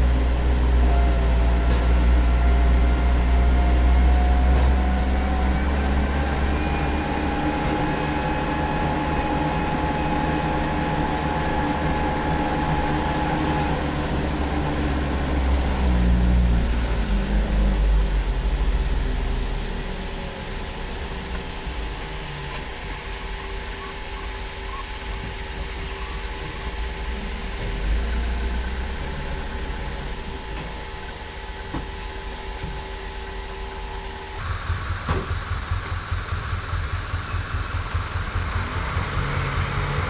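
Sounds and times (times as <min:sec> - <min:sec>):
heavy engine rumbling: 0:00.0 - 0:40.0.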